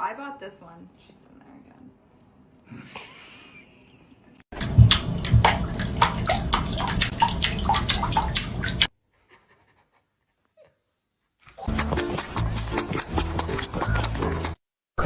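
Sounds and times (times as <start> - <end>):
water splashing and sloshing: 4.5 - 8.9.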